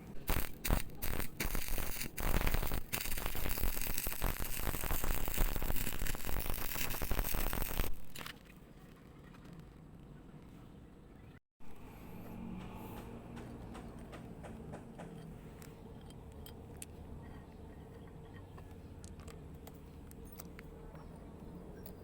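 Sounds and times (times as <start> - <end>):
welding arc crackling and hissing: 0.0 - 8.3.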